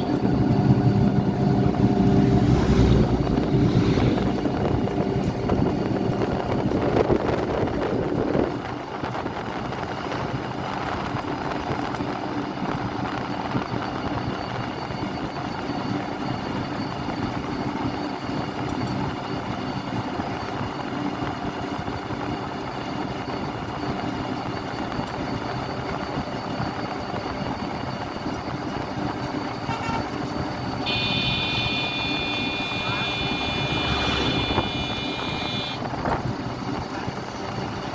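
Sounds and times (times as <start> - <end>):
road traffic hum: 0.0 - 17.8, 29.0 - 37.9
loud vehicle passing: 1.8 - 4.6, 32.0 - 35.8
high steady many-toned sound: 30.8 - 35.9.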